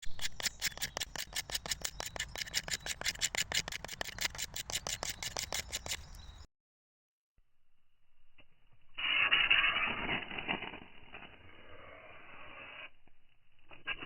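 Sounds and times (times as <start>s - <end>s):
steel striker scraping ferro rod: 0.0s - 6.2s.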